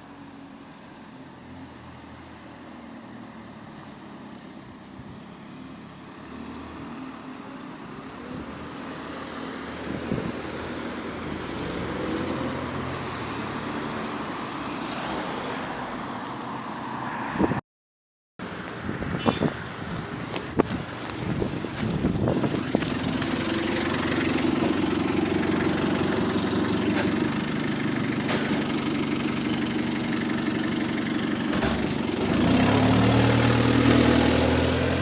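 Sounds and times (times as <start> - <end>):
bus engine running: 0.0 - 15.4, 18.4 - 35.0.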